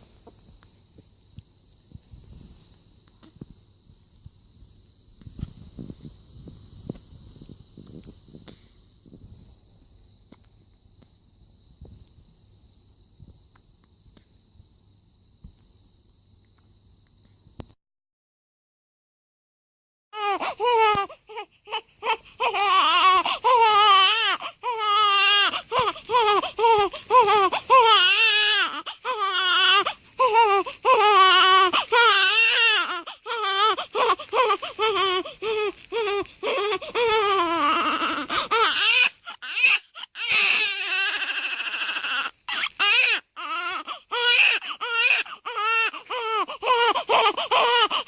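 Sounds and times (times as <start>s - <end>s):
newborn baby crying: 20.2s - 48.0s.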